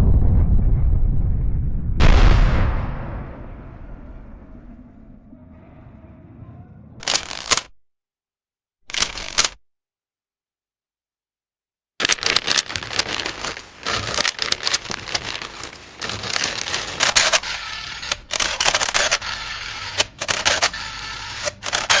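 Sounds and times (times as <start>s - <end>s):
camera mechanism clicking: 7.0s - 7.7s, 8.9s - 9.6s, 12.0s - 22.0s.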